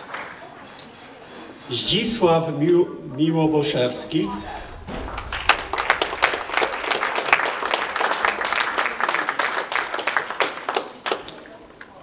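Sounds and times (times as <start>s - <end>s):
audience applauding: 5.1s - 12.0s.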